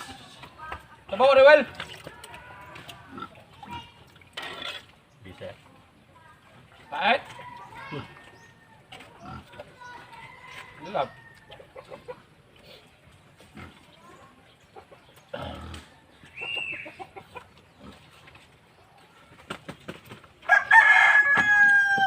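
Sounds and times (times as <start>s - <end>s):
rooster crowing: 20.5s - 22.0s.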